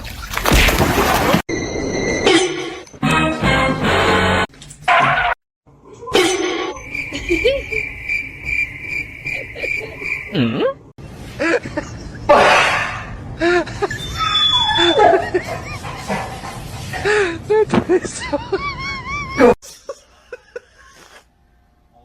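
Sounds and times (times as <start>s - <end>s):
people laughing and giggling: 7.1s - 7.8s, 15.0s - 21.2s.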